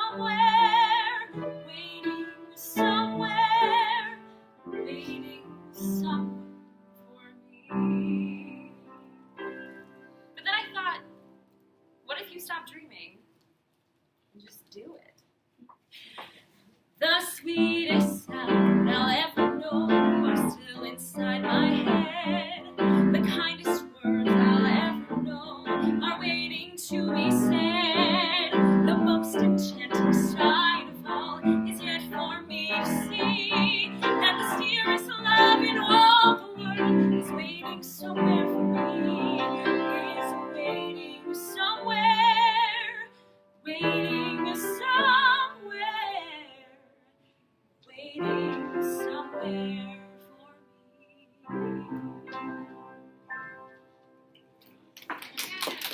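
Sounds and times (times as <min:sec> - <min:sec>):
piano accompaniment: 0:00.0 - 0:11.4, 0:17.5 - 0:43.0, 0:43.7 - 0:46.1, 0:48.2 - 0:50.4, 0:51.4 - 0:55.0
woman singing a slow ballad: 0:04.8 - 0:08.8, 0:17.0 - 0:43.1, 0:43.7 - 0:46.8, 0:47.9 - 0:50.6.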